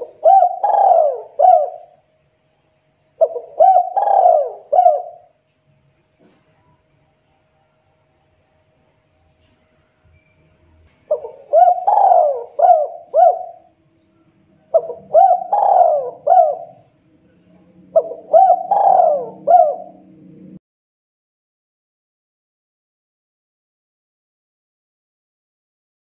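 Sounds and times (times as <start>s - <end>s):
dove cooing: 0.0s - 2.0s, 3.2s - 5.3s, 11.0s - 13.8s, 14.6s - 20.6s.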